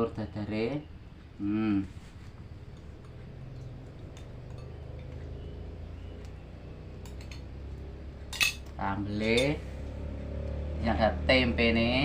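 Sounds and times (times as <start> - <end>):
steady low hum: 0.0 - 12.0
dishes and cutlery clinking: 2.7 - 5.2, 7.0 - 7.6, 8.3 - 9.6.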